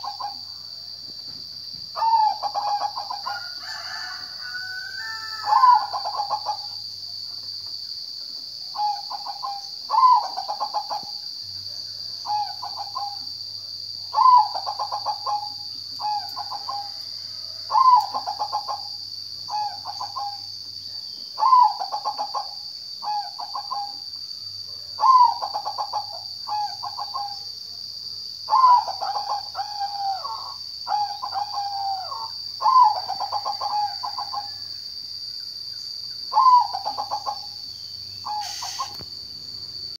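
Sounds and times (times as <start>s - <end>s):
dove cooing: 0.0s - 0.4s, 2.0s - 4.1s, 5.0s - 6.8s, 8.8s - 11.1s, 12.2s - 13.2s, 14.1s - 20.5s, 21.4s - 24.0s, 25.0s - 27.4s, 28.5s - 34.6s, 36.3s - 37.6s, 38.2s - 39.0s
high-pitched hiss: 32.0s - 39.9s.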